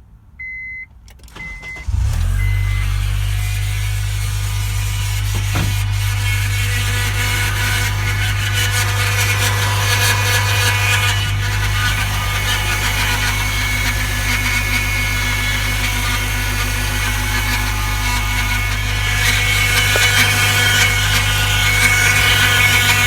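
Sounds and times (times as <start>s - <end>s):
car engine running: 1.2s - 23.0s
rough high-pitched mechanical noise: 1.9s - 23.0s.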